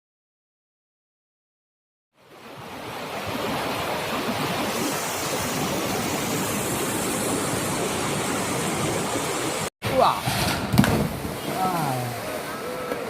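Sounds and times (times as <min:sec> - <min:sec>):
whitewater roar: 0:02.6 - 0:10.2, 0:11.1 - 0:13.0.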